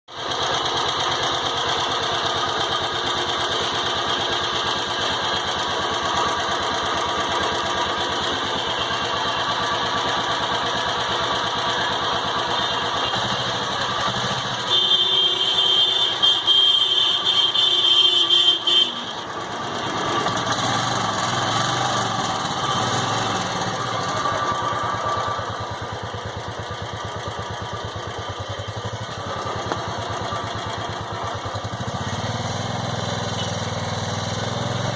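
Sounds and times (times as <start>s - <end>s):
motorcycle engine thumping: 28.0s - 31.8s.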